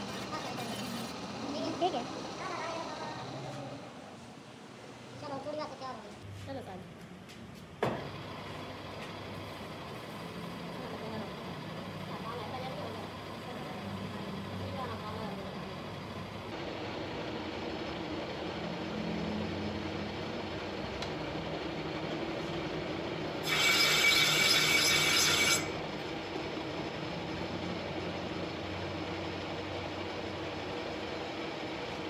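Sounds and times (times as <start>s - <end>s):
harsh high-pitched screech: 0.0s - 1.4s, 23.4s - 25.7s
machine humming: 0.0s - 4.1s, 11.3s - 31.6s.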